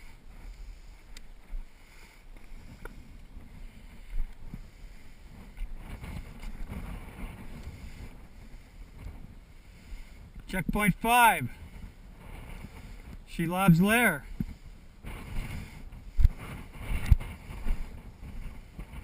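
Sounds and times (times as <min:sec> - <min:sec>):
wind buffeting microphone: 0:02.6 - 0:13.3, 0:14.1 - 0:19.0.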